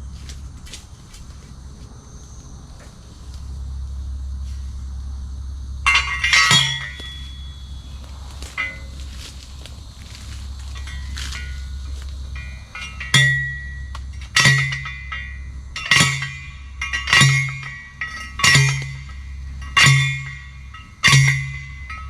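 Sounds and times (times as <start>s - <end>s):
post driver clanging on metal post: 5.9s - 7.8s, 8.4s - 9.3s, 10.6s - 22.0s.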